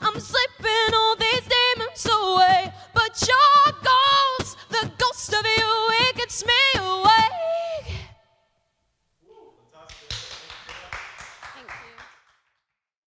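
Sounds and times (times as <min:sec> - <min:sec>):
woman singing: 0:00.0 - 0:08.3.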